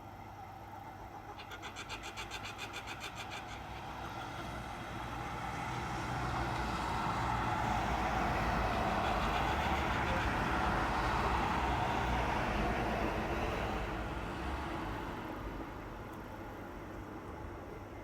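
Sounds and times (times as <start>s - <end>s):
vehicle passing on street: 3.6s - 16.0s.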